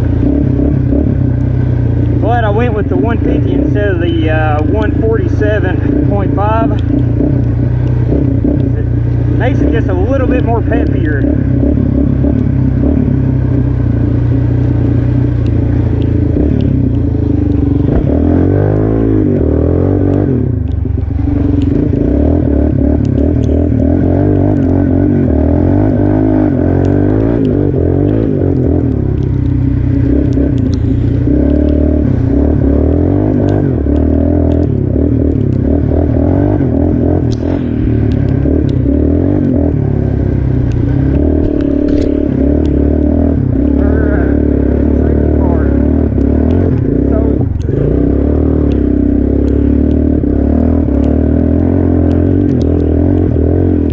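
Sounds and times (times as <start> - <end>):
quad bike engine revving: 0.0 - 53.9
clatter: 4.6 - 39.9, 40.6 - 44.5, 45.4 - 53.9.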